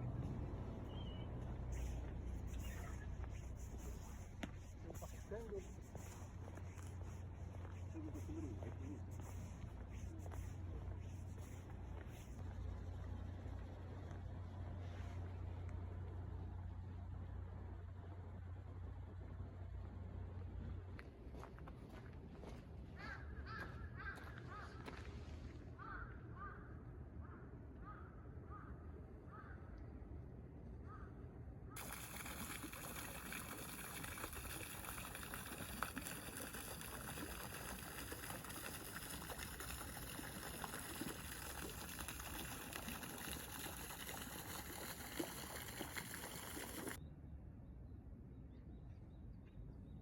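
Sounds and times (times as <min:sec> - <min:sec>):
water running and splashing: 0:31.8 - 0:47.0.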